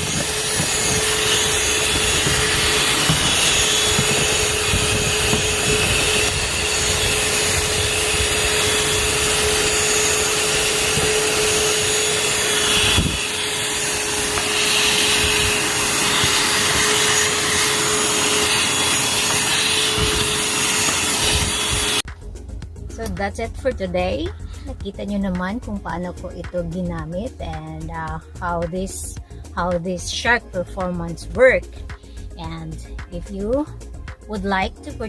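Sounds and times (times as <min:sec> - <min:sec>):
handheld vacuum running: 0:00.0 - 0:22.1.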